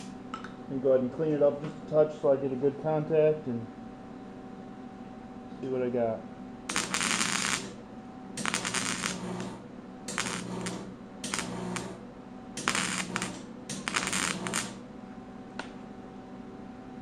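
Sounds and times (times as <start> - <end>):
welder arc crackling: 6.7 - 7.8, 8.4 - 12.0, 12.6 - 14.8.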